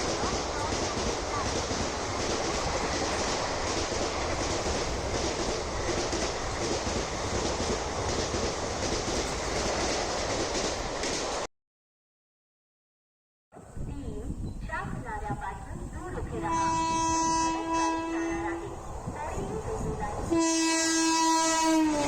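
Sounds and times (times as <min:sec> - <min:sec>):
wheels clattering over rail joints: 0:00.0 - 0:10.9
express train rushing past: 0:00.0 - 0:11.5, 0:14.3 - 0:22.0.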